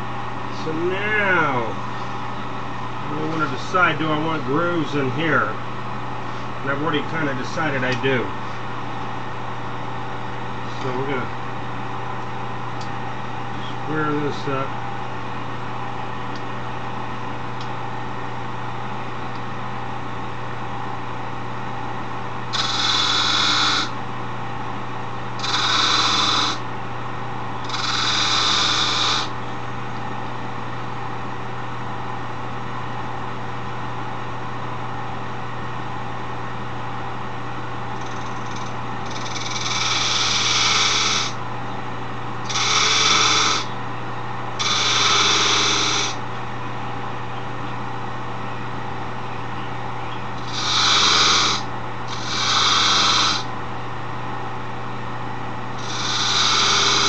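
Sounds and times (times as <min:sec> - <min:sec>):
wood lathe motor hum: 0:22.5 - 0:24.0, 0:25.4 - 0:26.6, 0:27.6 - 0:29.4, 0:38.0 - 0:41.4, 0:42.5 - 0:43.7, 0:44.6 - 0:46.2, 0:50.4 - 0:53.5, 0:55.8 - 0:57.0
tool scraping spinning wood: 0:22.6 - 0:23.9, 0:25.4 - 0:26.6, 0:27.7 - 0:29.4, 0:38.1 - 0:41.4, 0:42.5 - 0:43.7, 0:44.6 - 0:46.2, 0:50.4 - 0:53.5, 0:55.8 - 0:57.0.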